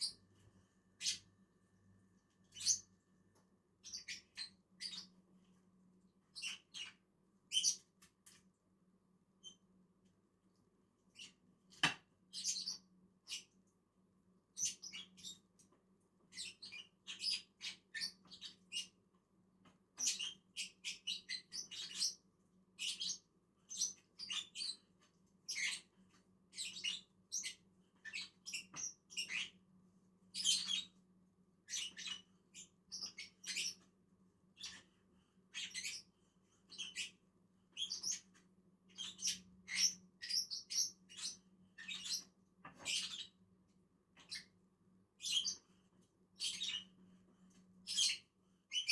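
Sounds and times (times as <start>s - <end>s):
lovebirds chirping: 2.5s - 2.9s, 31.7s - 33.8s, 37.8s - 38.3s, 38.9s - 43.3s, 46.4s - 46.9s.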